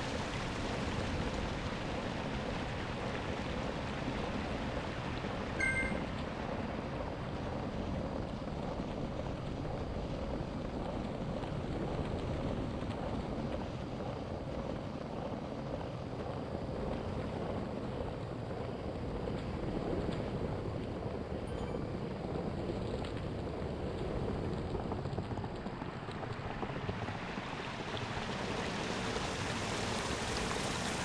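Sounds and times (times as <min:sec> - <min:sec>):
short electronic beep: 0:05.6 - 0:06.1.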